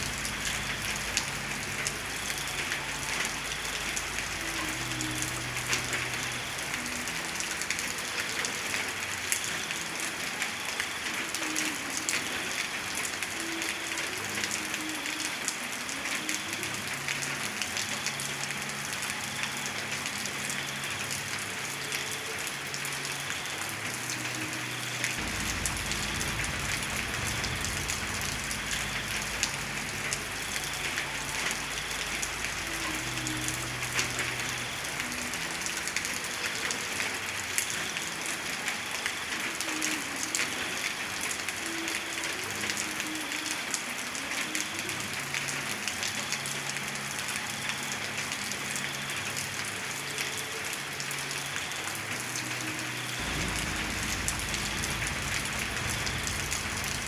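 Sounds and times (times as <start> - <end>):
heavy rain falling: 0.0 - 57.0
low rumble: 25.2 - 30.7, 53.2 - 57.0.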